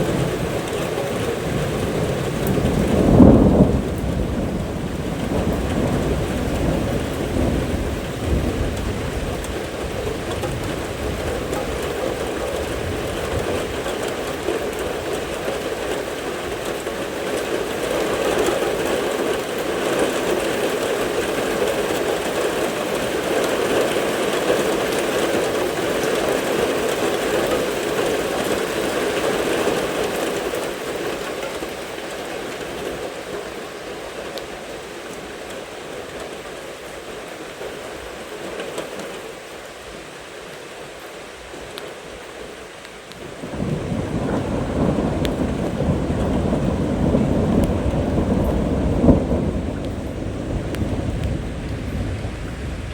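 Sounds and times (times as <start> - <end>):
thunder rumble: 0.0 - 32.6, 43.2 - 52.9
rain pouring: 0.0 - 52.9.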